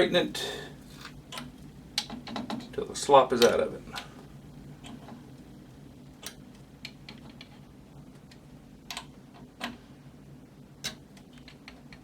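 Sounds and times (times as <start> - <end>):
sharp metal clicks and taps: 1.3 - 2.7.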